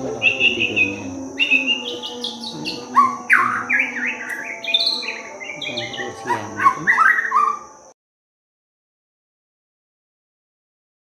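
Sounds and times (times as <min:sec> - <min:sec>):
loud sweeping bird notes: 0:00.0 - 0:07.9
songbird chirping and whistling: 0:00.0 - 0:07.9.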